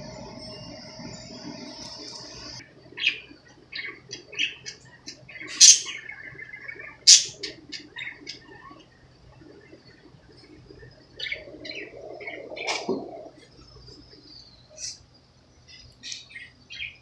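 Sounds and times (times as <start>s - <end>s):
budgerigars chirping: 5.5s - 6.0s, 7.1s - 7.5s
budgerigar squawks: 5.6s - 6.0s, 7.1s - 7.4s.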